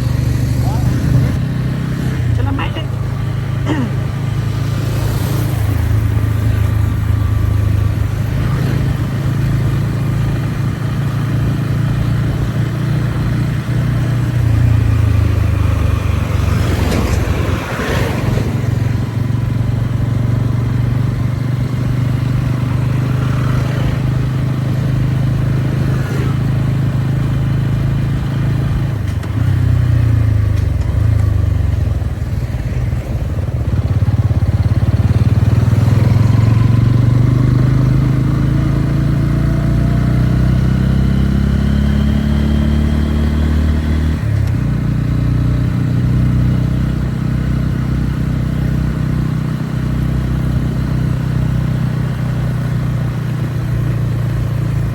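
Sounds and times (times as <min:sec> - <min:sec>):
motorcycle engine running: 0:00.0 - 0:54.9.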